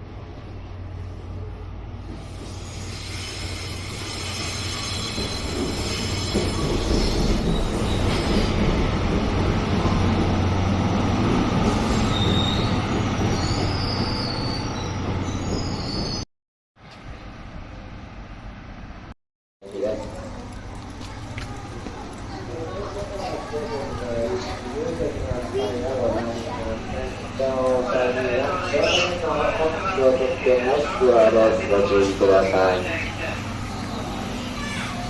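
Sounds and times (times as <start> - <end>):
train passing on rails: 0.0 - 16.2, 16.8 - 19.1, 19.7 - 35.0
train wheels squealing: 2.2 - 8.6, 11.6 - 16.2, 33.6 - 35.0.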